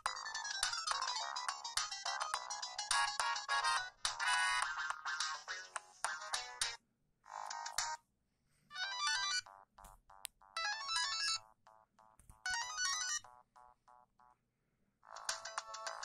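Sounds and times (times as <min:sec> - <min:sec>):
mobile phone ringtone: 0:00.0 - 0:04.6, 0:08.7 - 0:14.3.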